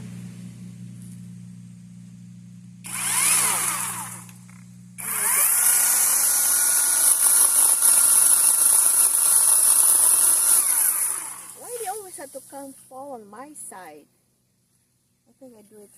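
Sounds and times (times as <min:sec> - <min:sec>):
chainsaw cutting at full throttle: 0:02.9 - 0:11.8.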